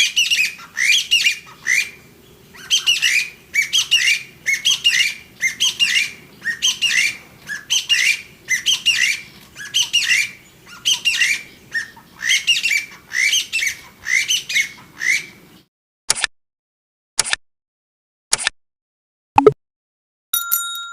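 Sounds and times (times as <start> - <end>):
partridge calling: 0.0 - 15.4.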